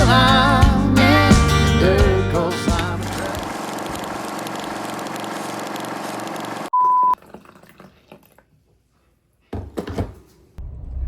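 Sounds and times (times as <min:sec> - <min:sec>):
background music: 0:00.0 - 0:03.4
electronic beep: 0:06.7 - 0:07.2.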